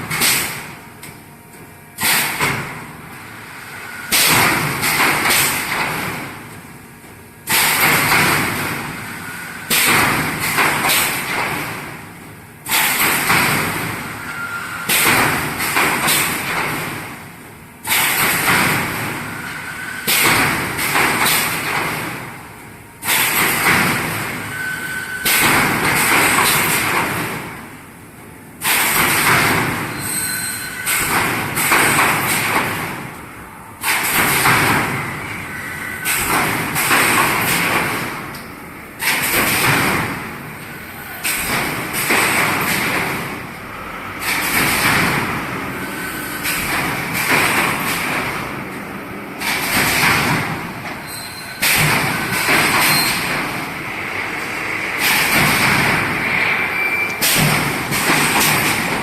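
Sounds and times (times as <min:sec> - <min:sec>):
welding machine mechanical stroke: 0:51.0 - 0:59.0.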